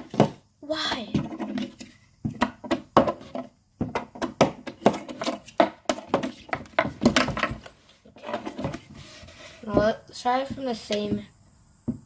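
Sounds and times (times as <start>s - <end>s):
sticks knocking on wooden desk: 1.1s - 7.6s.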